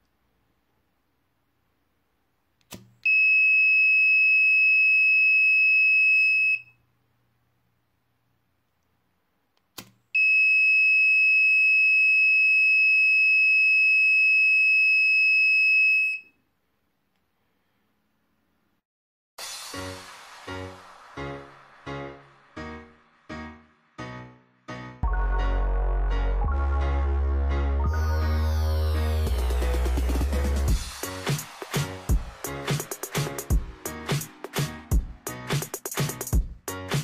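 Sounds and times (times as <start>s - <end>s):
sharp click: 2.6s - 3.0s, 9.6s - 10.0s.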